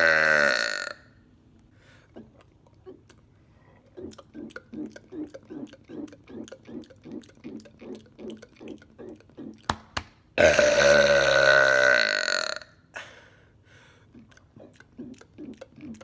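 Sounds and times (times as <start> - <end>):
man burping: 0.0 - 1.0, 10.4 - 12.7
soft rhythmic mouth sounds: 0.0 - 11.2, 12.1 - 16.0.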